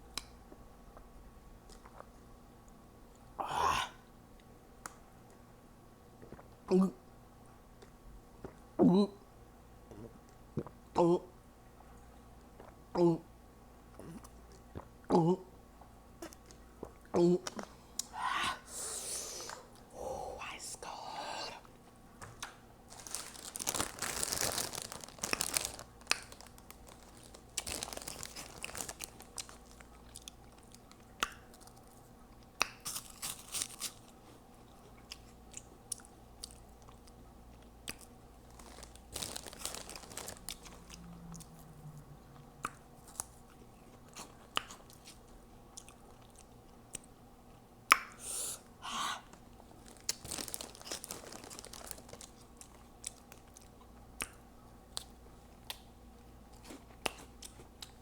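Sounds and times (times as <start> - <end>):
chewing and crunching snacks: 0.9 - 2.3, 6.2 - 6.6, 11.9 - 12.8, 13.8 - 15.2, 15.8 - 18.2, 21.0 - 48.2, 49.2 - 58.0
wet mouth smacking: 42.4 - 43.4.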